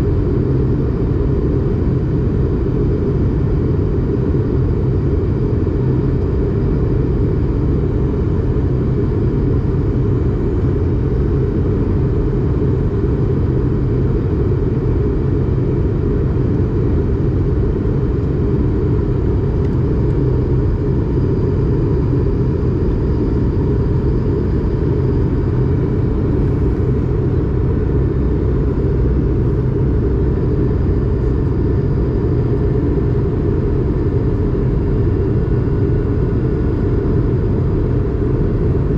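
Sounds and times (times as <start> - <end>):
jet engines roaring in cabin: 0.0 - 38.9.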